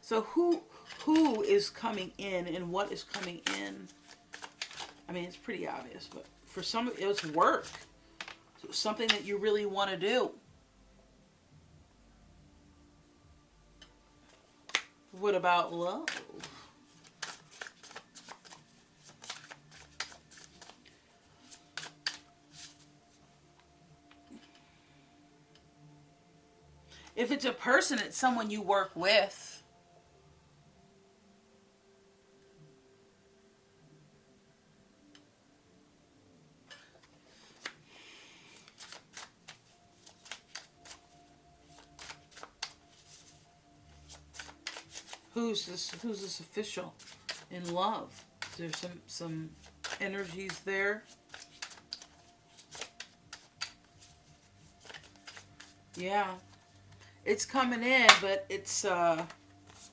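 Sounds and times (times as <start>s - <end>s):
cards being shuffled: 0.8s - 9.4s, 14.7s - 15.0s, 16.0s - 22.9s, 37.0s - 37.8s, 38.5s - 59.9s.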